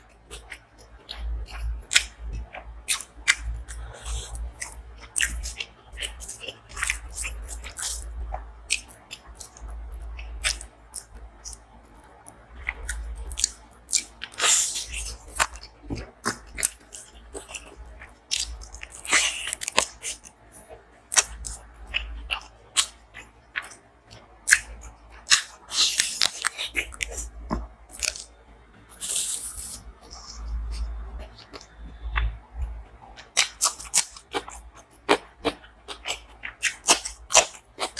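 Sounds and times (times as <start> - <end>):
person chewing with wet clicks: 0.0 - 37.9
crunching bites: 12.6 - 20.3, 24.5 - 27.3, 27.9 - 28.3, 33.2 - 37.9.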